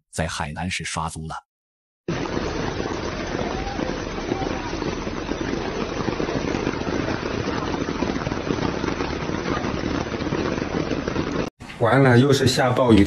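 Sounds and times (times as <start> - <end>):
wind: 2.1 - 12.4
rain pattering: 2.1 - 13.0.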